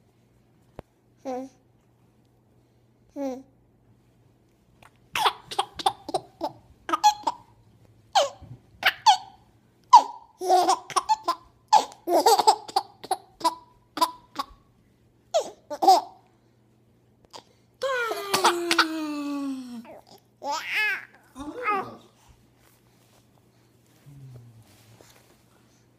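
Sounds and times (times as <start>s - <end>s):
baby giggling: 5.2s - 7.5s, 8.2s - 14.6s, 18.1s - 18.9s.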